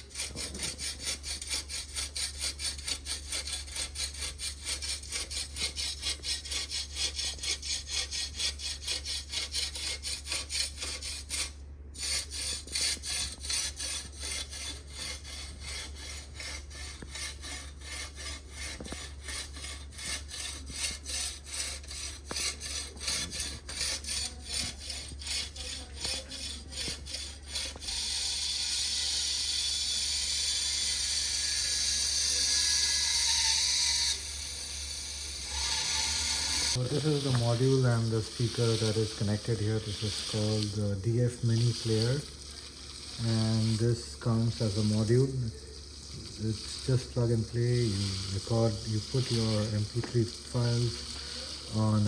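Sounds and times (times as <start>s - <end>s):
steady low hum: 0.0s - 52.0s
steady hiss: 36.6s - 52.0s.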